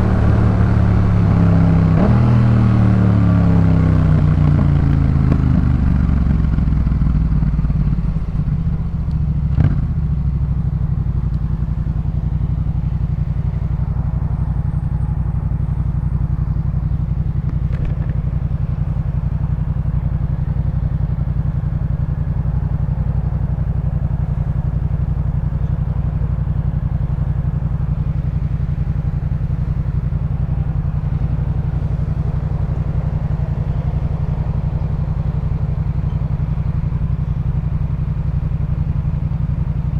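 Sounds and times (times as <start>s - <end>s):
motorcycle engine idling: 0.0s - 39.9s.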